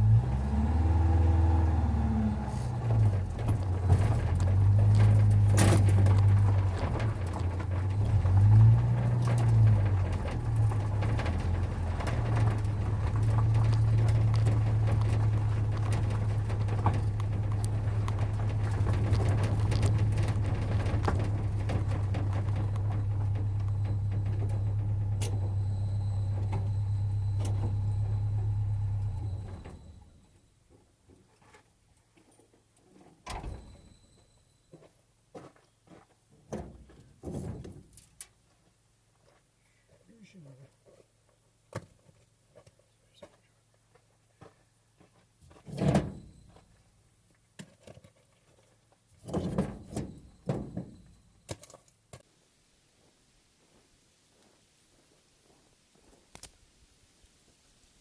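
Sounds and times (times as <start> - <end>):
heavy thuds and knocks: 2.7 - 25.6.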